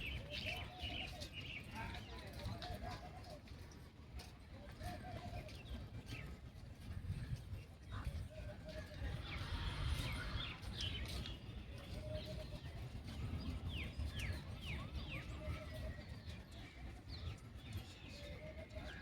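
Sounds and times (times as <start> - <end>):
steady low rumble: 7.1 - 15.7.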